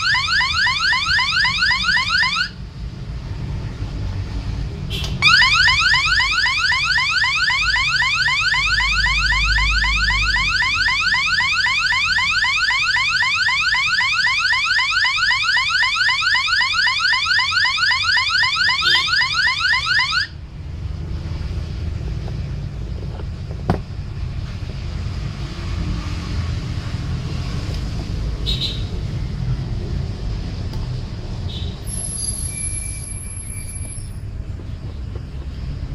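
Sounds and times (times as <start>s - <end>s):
siren-like electronic tone: 5.2s - 20.4s, 31.8s - 34.2s.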